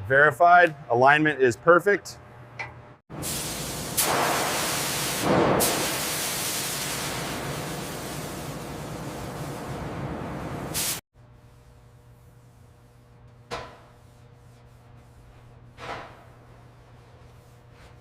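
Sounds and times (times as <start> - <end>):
compressed air spray hissing: 3.2 - 9.8, 10.7 - 11.0.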